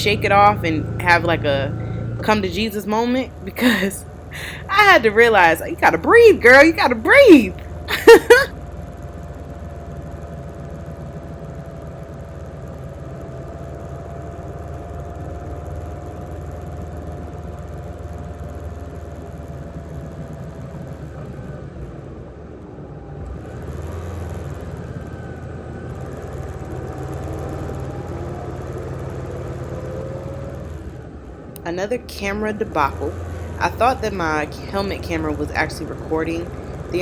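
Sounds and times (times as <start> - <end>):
motorcycle engine running: 0.0 - 7.9, 31.6 - 37.0
wind and road noise: 14.5 - 37.0.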